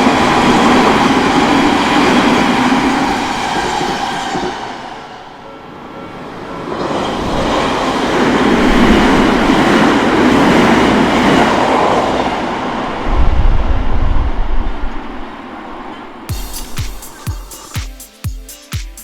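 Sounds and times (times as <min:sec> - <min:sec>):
electric train rumbling past: 0:00.0 - 0:17.7
deep loud rumble: 0:13.0 - 0:15.4.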